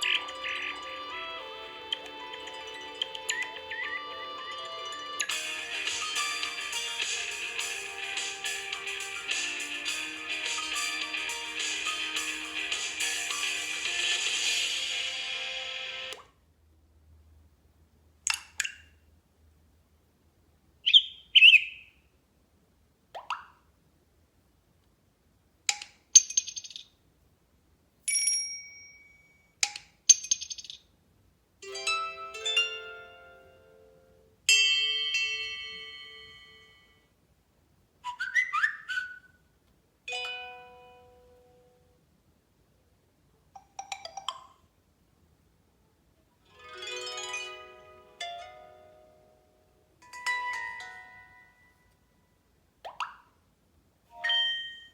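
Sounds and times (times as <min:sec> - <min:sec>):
phone notification chimes: 0:54.2 - 0:54.9.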